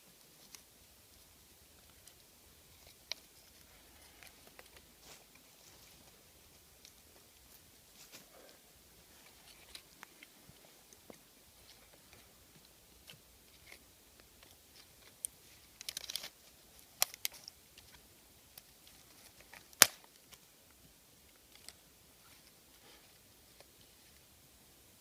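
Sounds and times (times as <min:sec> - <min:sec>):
dry sticks snapping: 0:19.6 - 0:20.4.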